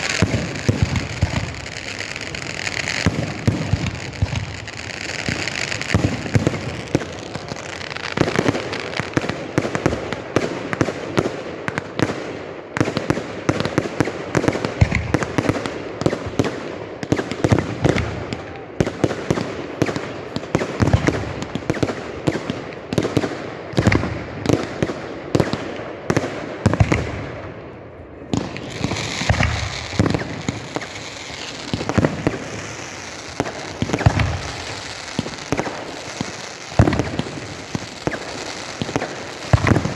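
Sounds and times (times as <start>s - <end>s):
fireworks bangs and crackling: 0.0s - 39.9s.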